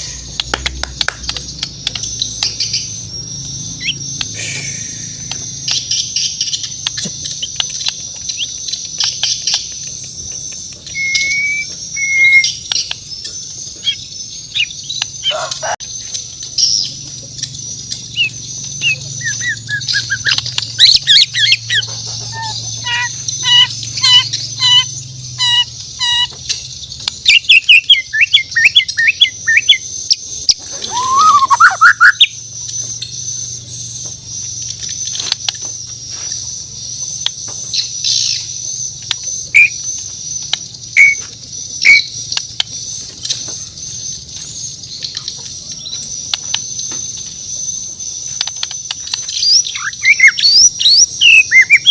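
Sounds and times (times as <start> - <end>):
bird singing whistles: 10.7 - 13.0, 18.2 - 21.7, 30.5 - 32.4, 48.4 - 51.9.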